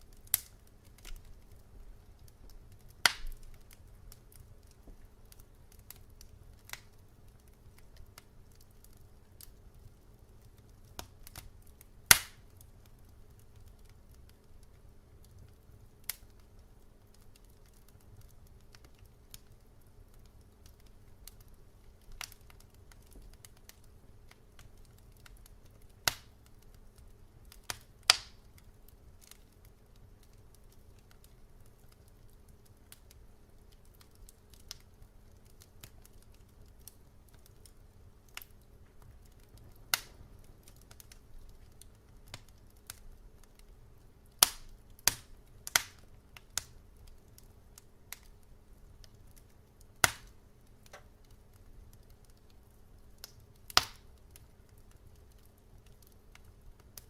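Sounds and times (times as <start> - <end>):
low steady hum: 0.0 - 57.0
wood fire crackling: 0.0 - 57.0.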